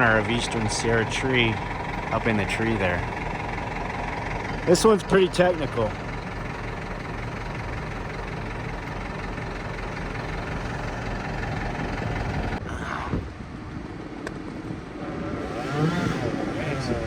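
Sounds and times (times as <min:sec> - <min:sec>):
crane engine idling: 0:00.0 - 0:12.6.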